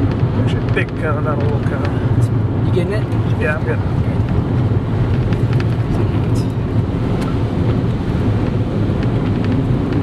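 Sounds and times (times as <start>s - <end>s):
car engine rumble: 0.0s - 10.0s.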